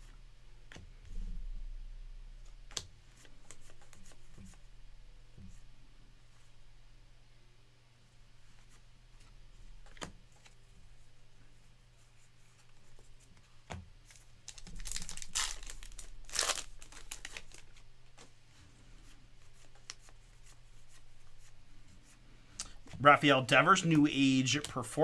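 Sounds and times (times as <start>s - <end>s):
wrapper tearing and crinkling: 14.1s - 17.8s
cards clicking: 23.8s - 25.0s.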